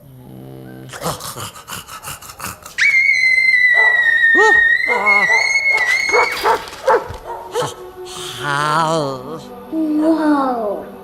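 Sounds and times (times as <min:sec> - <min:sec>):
dogs yipping and barking: 0:02.0 - 0:07.8
dog whining: 0:02.8 - 0:07.6.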